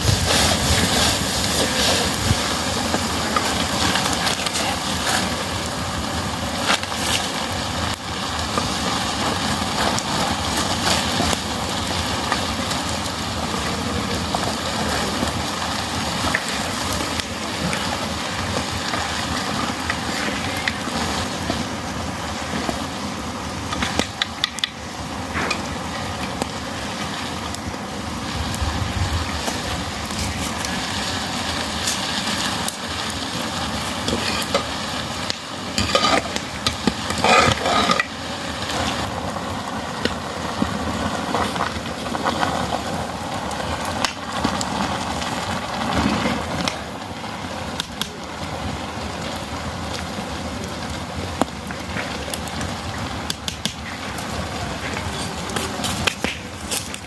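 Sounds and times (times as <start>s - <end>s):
food sizzling in a pan: 0.0s - 57.0s
utensil scraping a pan: 35.7s - 38.1s.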